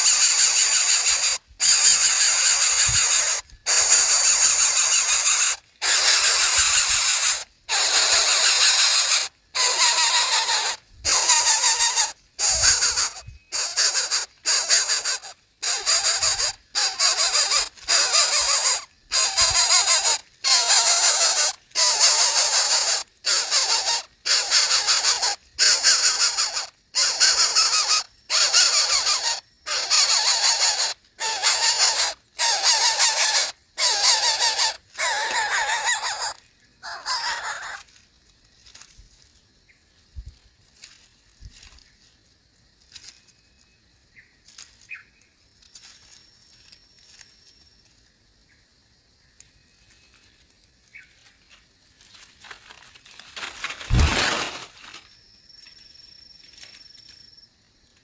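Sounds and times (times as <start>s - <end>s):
young bird hissing calls: 0.0s - 37.8s.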